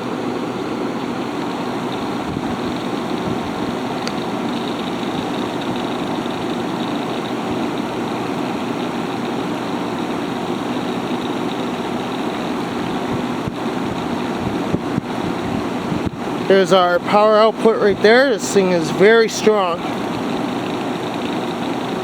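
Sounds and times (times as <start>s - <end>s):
air conditioner air rushing: 0.0s - 22.0s.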